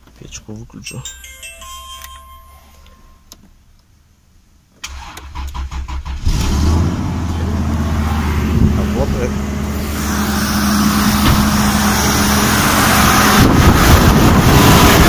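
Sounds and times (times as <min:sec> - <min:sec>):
car engine idling: 0:07.0 - 0:14.4.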